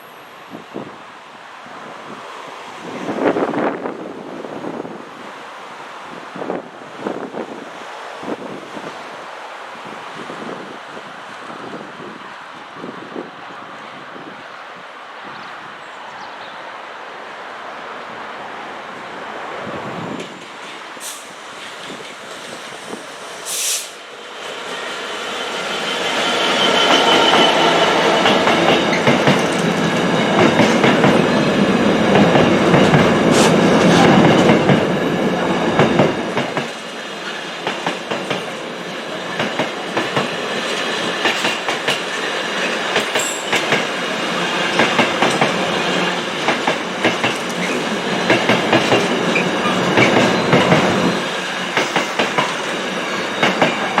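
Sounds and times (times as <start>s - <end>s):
train passing: 16.6s - 54.0s
clickety-clack over rail joints: 26.7s - 35.0s, 35.8s - 54.0s.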